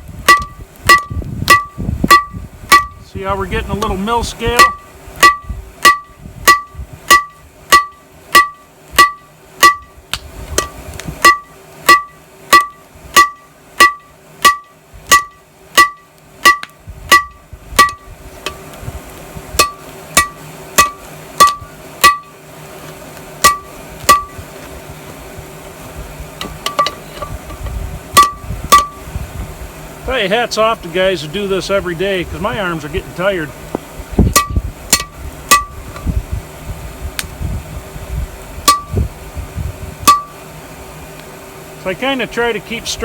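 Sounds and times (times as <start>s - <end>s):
hammer ringing on steel: 4.6s - 9.9s.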